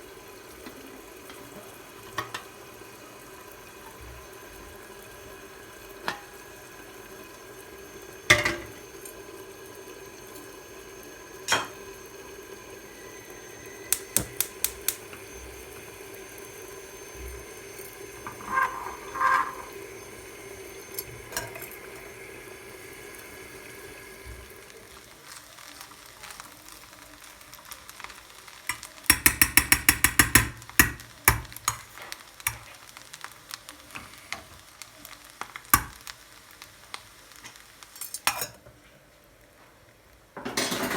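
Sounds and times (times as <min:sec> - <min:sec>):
utensil stirring in a pan: 0:13.4 - 0:38.8
rapid clattering against a pan: 0:28.7 - 0:32.8.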